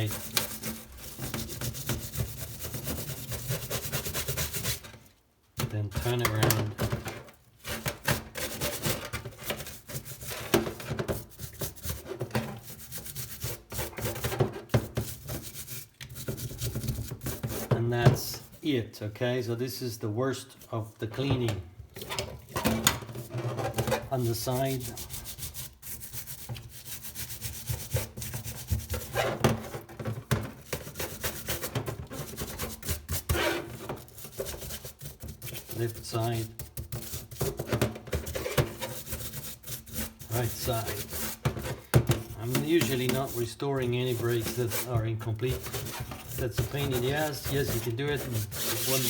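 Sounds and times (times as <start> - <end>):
hand rubbing strokes: 42.3 - 49.0.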